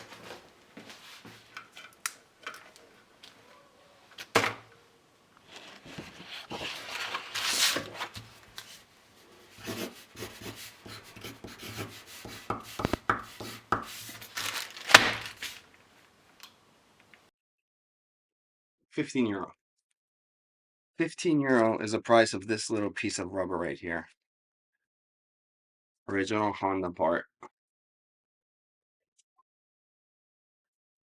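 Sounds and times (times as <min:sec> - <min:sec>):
rustling and tearing: 0:05.4 - 0:08.8, 0:13.9 - 0:15.7.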